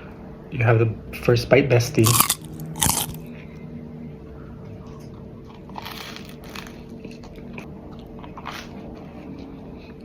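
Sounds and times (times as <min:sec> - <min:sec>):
toast being chewed: 0:02.0 - 0:03.2.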